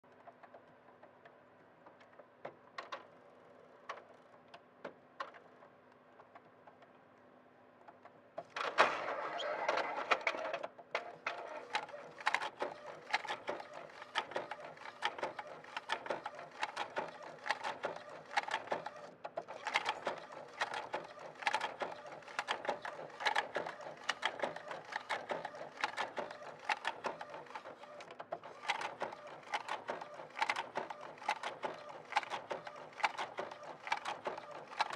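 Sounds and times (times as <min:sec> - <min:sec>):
printer clicks: 0:08.4 - 0:34.9
printer knocking clatter: 0:08.4 - 0:34.9.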